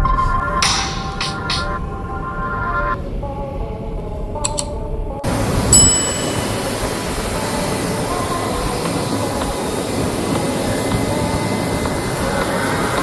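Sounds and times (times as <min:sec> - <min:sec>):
jet engines running: 0:00.4 - 0:13.0.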